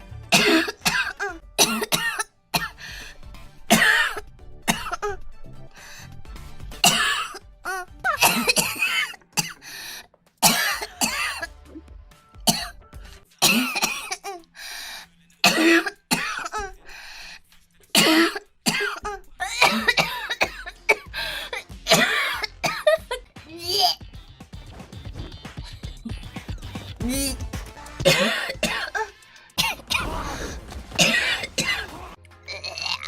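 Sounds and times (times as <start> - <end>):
girl coughing harshly: 0.3 - 2.8, 3.7 - 5.2, 6.8 - 9.6, 10.4 - 11.5, 12.5 - 12.8, 13.4 - 14.4, 15.4 - 16.8, 17.9 - 23.2, 28.0 - 30.4, 31.0 - 32.0.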